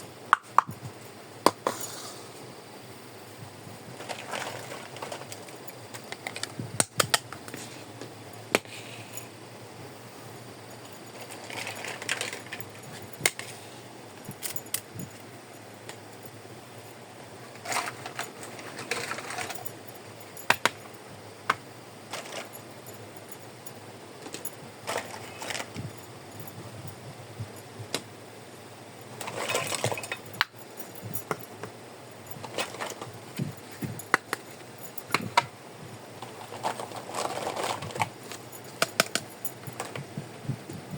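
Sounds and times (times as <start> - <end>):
rustling: 3.6 - 9.4, 10.6 - 16.0, 16.8 - 21.0, 22.1 - 23.4, 24.2 - 27.6, 32.2 - 40.9.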